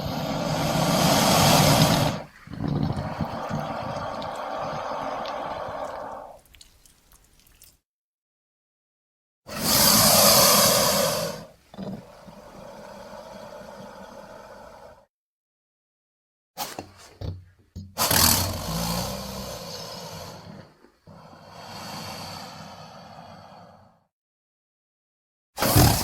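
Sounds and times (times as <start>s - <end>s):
crocodile hissing roar: 0.0s - 6.4s, 9.5s - 15.0s, 18.0s - 24.0s, 25.6s - 26.0s.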